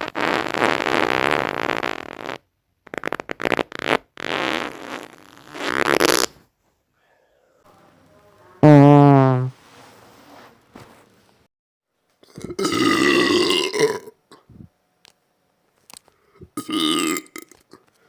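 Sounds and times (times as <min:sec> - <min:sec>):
deep steady bodily sound: 0:00.0 - 0:06.4
person farting: 0:00.0 - 0:06.4, 0:08.6 - 0:09.6, 0:12.2 - 0:14.2, 0:16.4 - 0:17.8.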